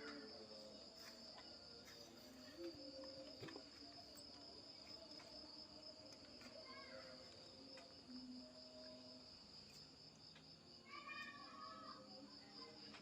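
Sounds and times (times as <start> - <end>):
crickets trilling: 0.0 - 13.0.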